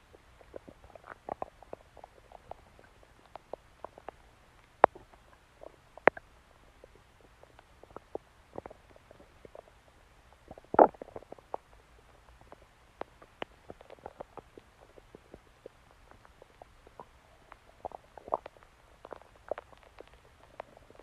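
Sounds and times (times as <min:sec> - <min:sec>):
stomach growling: 0:00.0 - 0:21.0.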